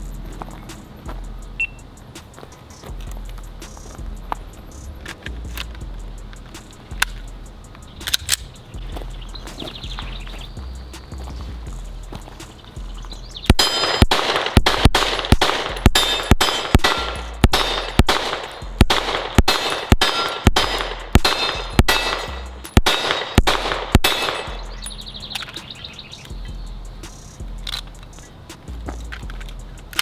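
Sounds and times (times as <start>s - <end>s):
pistol shots: 13.5s - 24.6s
bullets ringing off steel targets: 13.5s - 26.3s.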